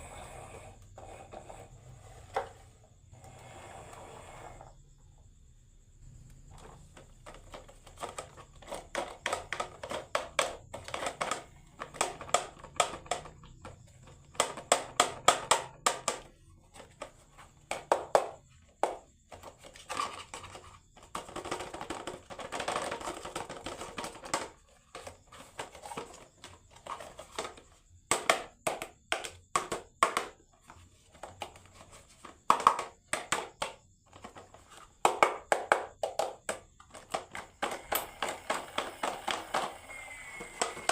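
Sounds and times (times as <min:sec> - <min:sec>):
marbles rolling down wooden run: 0:37.5 - 0:40.9.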